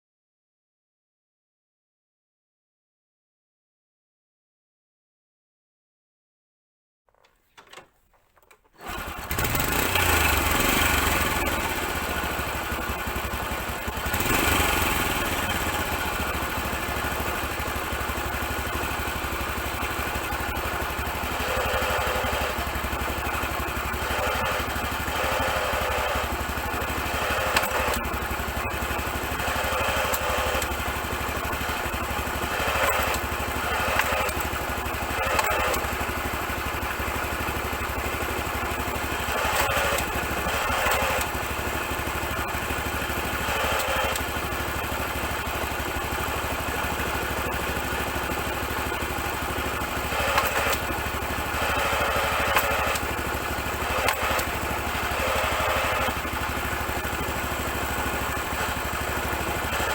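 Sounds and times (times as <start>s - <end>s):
motorcycle engine running: 8.8s - 59.9s
sharp mechanical clicks: 21.4s - 36.1s, 39.1s - 41.7s, 42.3s - 59.9s.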